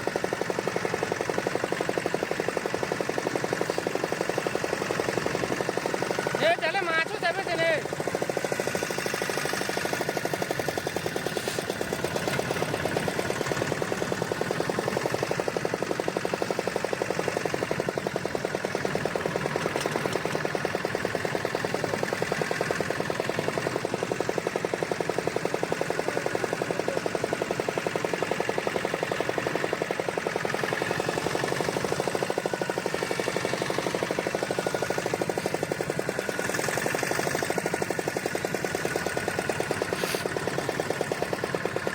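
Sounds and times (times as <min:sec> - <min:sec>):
boat engine running: 0:00.0 - 0:41.9.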